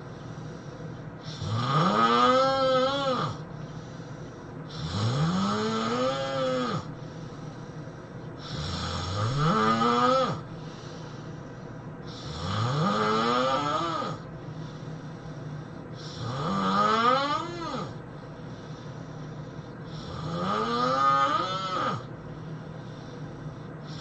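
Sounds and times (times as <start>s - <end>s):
person snoring heavily: 1.2s - 3.5s, 4.7s - 7.0s, 8.4s - 11.2s, 12.1s - 14.3s, 16.0s - 18.0s, 19.8s - 22.1s.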